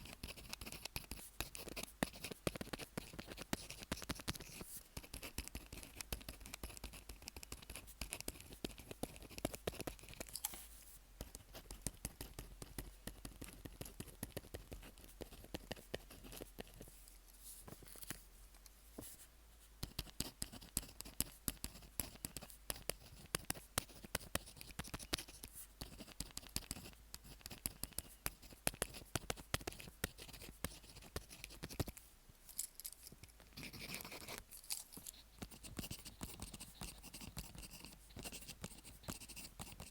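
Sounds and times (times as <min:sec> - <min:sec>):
pen writing on paper: 0:00.0 - 0:10.3, 0:11.2 - 0:16.8, 0:19.8 - 0:31.9, 0:33.6 - 0:34.4, 0:35.4 - 0:39.9.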